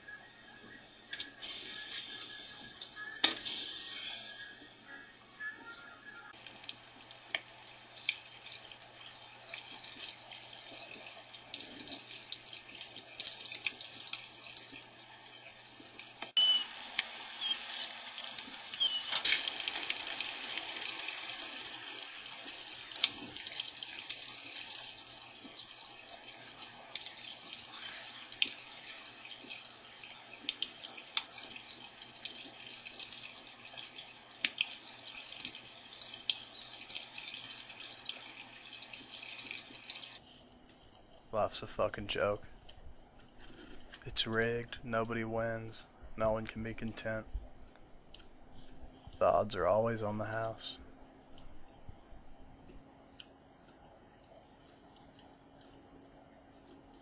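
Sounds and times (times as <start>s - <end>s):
small clicks and splashes: 6.3s - 41.3s, 51.2s - 57.0s
water running from tap: 6.4s - 40.2s.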